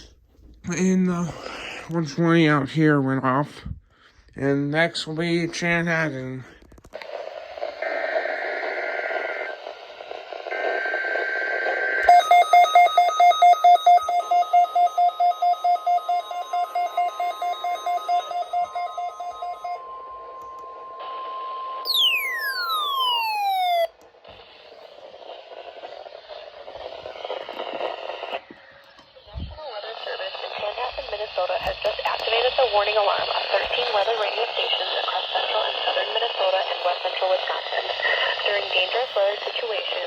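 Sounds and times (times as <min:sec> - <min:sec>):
radio static: 0:05.7 - 0:12.1, 0:20.8 - 0:40.0
radio alarm beeping: 0:07.2 - 0:40.0
steady warning alarm tone: 0:10.5 - 0:23.9
warbling data tones: 0:10.5 - 0:30.8.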